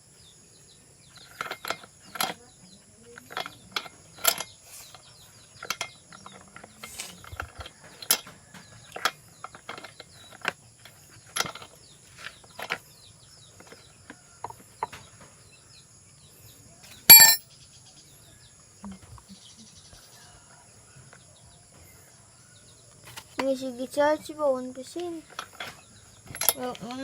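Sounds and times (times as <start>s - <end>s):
tools and parts clicking: 1.2s - 2.4s, 3.2s - 12.8s, 17.1s - 17.4s, 25.3s - 26.8s.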